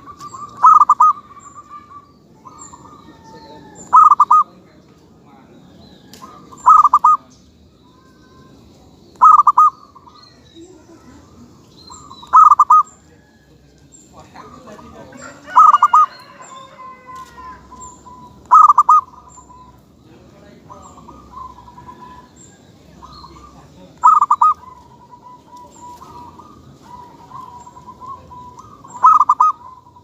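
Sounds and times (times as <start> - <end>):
dove cooing: 0.0 - 4.6, 6.2 - 7.3, 9.1 - 10.2, 11.0 - 13.3, 14.4 - 19.8, 20.6 - 30.0
faint high bird chirps: 5.7 - 30.0.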